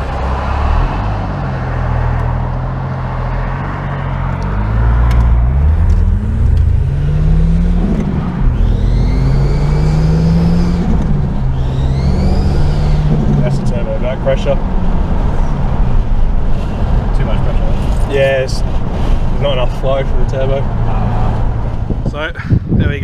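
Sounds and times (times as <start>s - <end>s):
car engine accelerating: 0.0s - 22.3s
turbo whistle: 8.5s - 10.1s, 11.5s - 13.1s.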